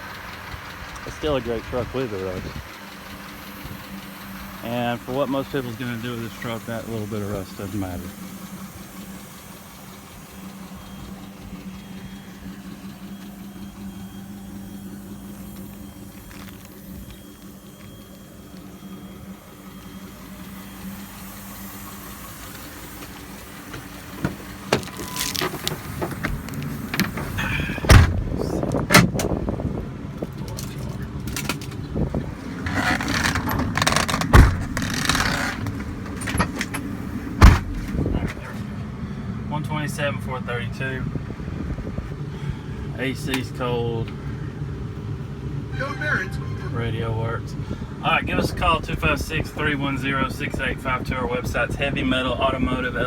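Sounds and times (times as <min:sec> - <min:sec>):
truck engine idling: 0:00.0 - 0:53.0
loud thumps: 0:23.7 - 0:29.4, 0:31.3 - 0:38.4.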